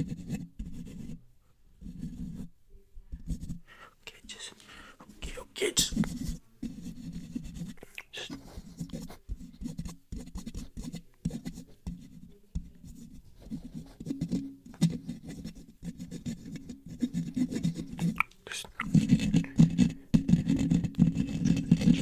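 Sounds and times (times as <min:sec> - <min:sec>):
fingers scratching on microphone: 0:05.8 - 0:22.0.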